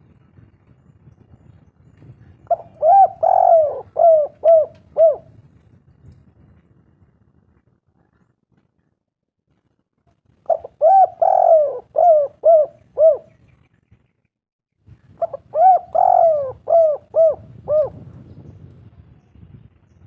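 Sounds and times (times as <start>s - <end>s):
dove cooing: 2.5s - 5.4s, 10.5s - 13.4s, 15.2s - 18.2s.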